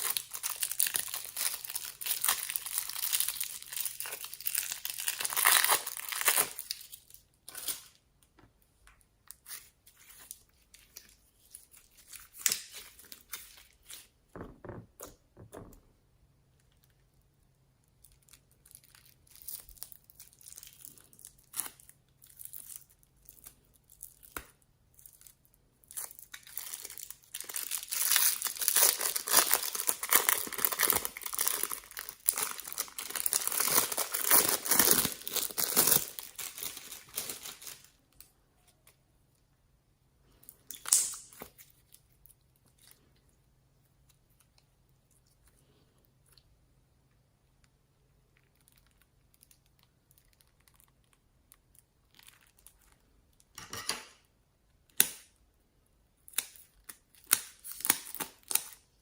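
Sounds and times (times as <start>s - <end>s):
crinkling and tearing material: 0.0s - 7.9s, 18.0s - 39.0s.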